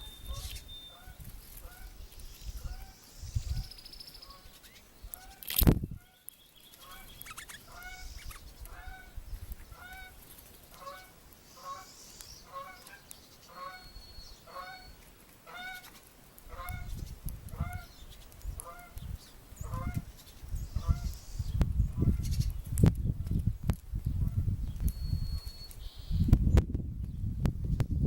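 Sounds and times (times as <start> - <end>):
goose honking: 0.0 - 1.9, 7.7 - 8.1, 10.8 - 11.9, 12.5 - 13.9, 14.5 - 15.8, 16.5 - 16.9, 18.6 - 19.0, 19.6 - 20.0.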